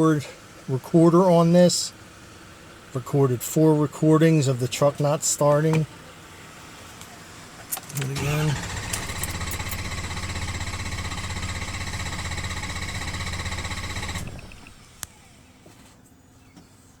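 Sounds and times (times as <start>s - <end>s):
starter motor cranking engine: 7.8s - 15.1s.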